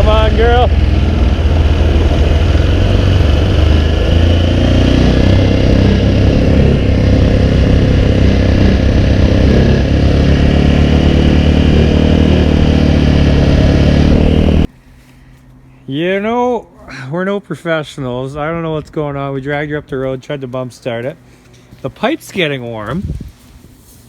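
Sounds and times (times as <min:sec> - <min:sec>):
vehicle engine running under load: 0:00.0 - 0:15.7.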